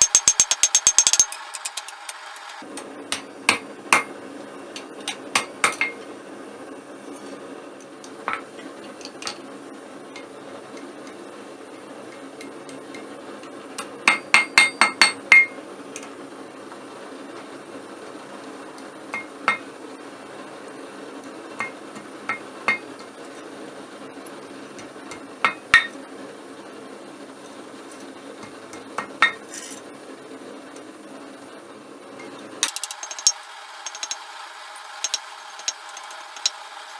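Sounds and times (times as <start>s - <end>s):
hammer ringing on anvil: 0.0s - 2.6s.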